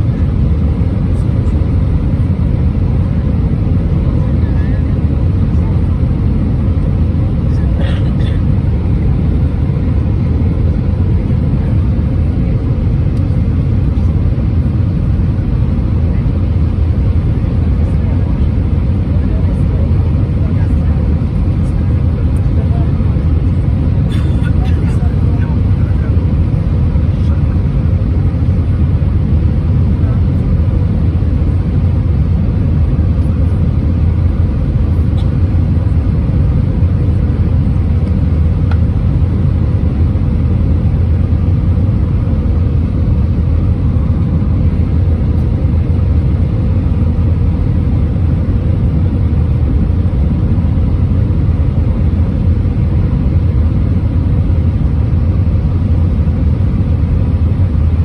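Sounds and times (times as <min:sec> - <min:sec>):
airliner cabin engine rumble: 0:00.0 - 0:58.0.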